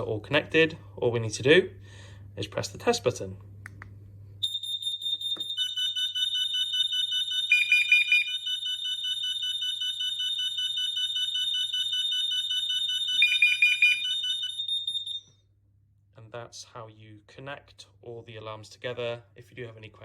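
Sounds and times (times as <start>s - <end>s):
high-pitched pulsing alarm tones: 4.4s - 15.3s.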